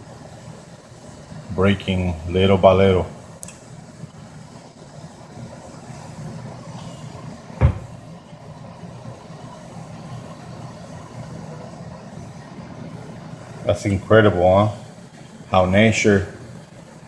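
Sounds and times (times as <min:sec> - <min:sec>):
sharp knock: 0:07.6 - 0:08.0.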